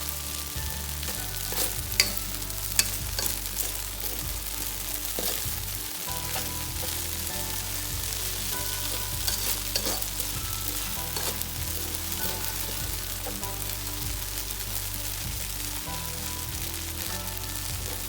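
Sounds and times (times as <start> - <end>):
food sizzling in a pan: 0.0 - 18.0.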